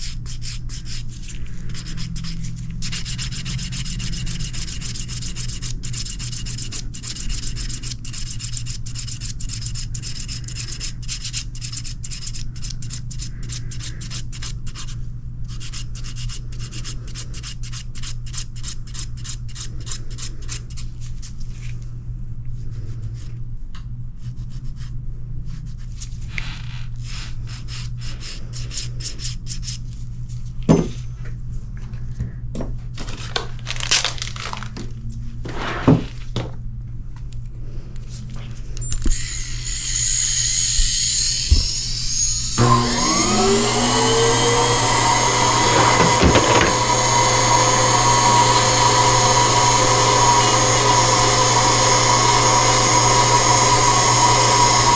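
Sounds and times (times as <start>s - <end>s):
file rubbing on toenail: 0.0s - 21.6s, 24.2s - 30.0s
high whine: 38.8s - 54.9s.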